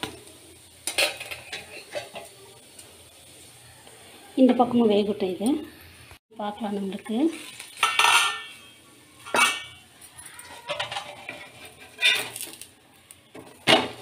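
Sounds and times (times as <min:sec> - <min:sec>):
metal cookware clinking: 0:00.0 - 0:03.0, 0:06.7 - 0:12.7.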